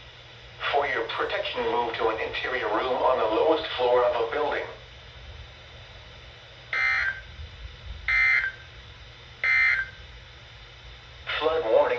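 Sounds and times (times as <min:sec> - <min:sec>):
harsh digital data tone bursts: 0:06.7 - 0:07.3, 0:08.1 - 0:08.7, 0:09.4 - 0:10.0.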